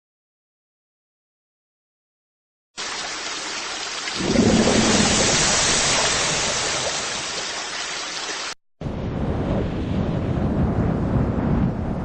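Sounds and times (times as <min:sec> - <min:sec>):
rain hiss: 0:02.8 - 0:08.6
thunder rumble: 0:04.2 - 0:07.2, 0:08.8 - 0:12.0.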